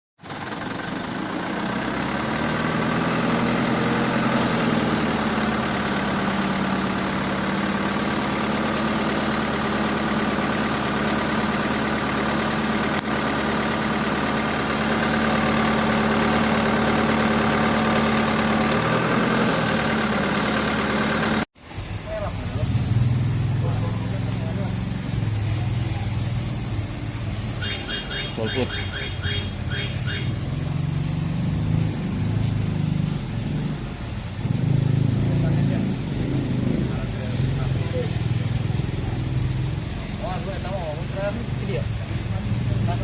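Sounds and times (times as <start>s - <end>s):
truck engine idling: 0.2s - 31.5s.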